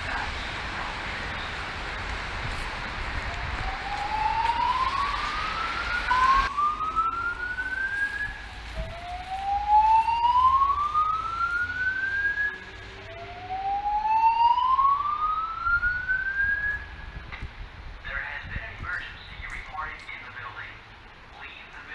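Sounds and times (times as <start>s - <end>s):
fire alarm whoop tone: 3.4s - 17.1s.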